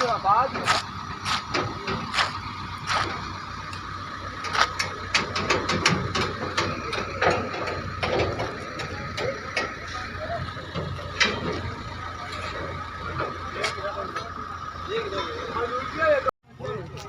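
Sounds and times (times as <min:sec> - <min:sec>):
heavy machinery running: 0:00.0 - 0:16.3
sharp metallic clanks: 0:04.4 - 0:14.4.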